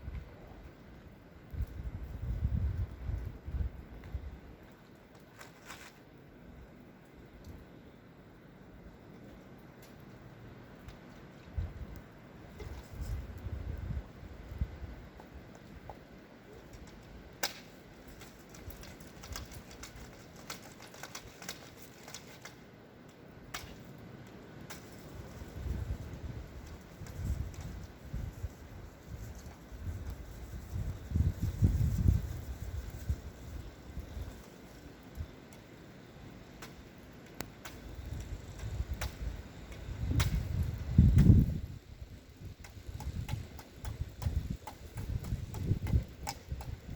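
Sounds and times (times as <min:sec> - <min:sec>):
wind buffeting microphone: 0:01.4 - 0:04.5, 0:11.5 - 0:12.0, 0:12.6 - 0:15.1, 0:25.2 - 0:34.4, 0:37.8 - 0:46.9
sharp ticks and clicks: 0:42.5 - 0:46.9.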